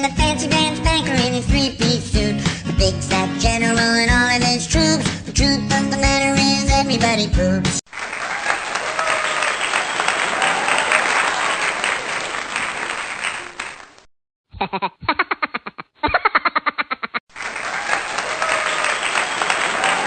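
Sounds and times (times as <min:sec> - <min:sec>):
crowd applause and cheering: 0:07.9 - 0:14.1, 0:17.3 - 0:20.0.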